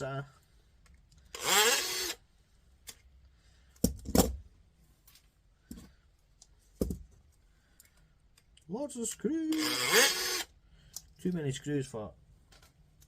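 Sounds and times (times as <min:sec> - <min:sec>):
clicks and knocks of handled parts: 0:10.8 - 0:11.5, 0:12.5 - 0:13.0.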